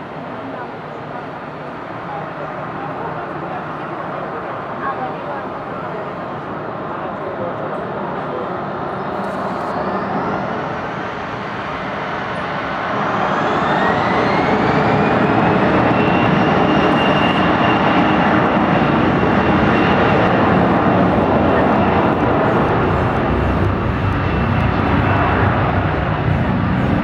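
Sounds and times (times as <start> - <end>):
jet engines spooling up: 8.7 - 27.0
rising engine whine: 12.8 - 27.0.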